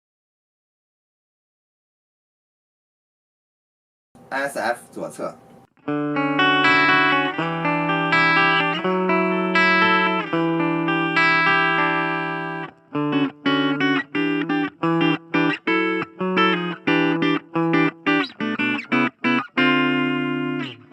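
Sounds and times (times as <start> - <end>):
clean electric guitar chords: 5.8 - 20.9.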